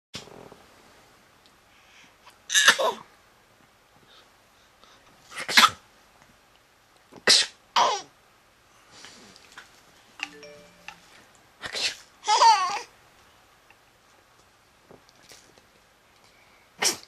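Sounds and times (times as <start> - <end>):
baby mock sneezes: 2.5 - 3.0, 5.3 - 5.8, 7.3 - 8.0, 16.8 - 17.0.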